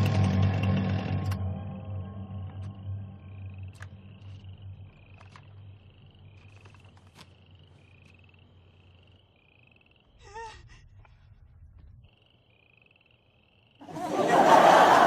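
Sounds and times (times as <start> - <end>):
low drone: 0.0 - 7.0
crickets chirping: 0.7 - 15.0.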